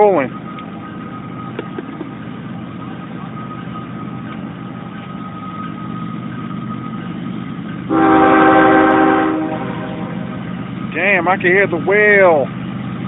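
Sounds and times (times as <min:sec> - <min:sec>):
train rumbling by: 0:00.0 - 0:13.0
locomotive air horn blast: 0:07.9 - 0:10.4.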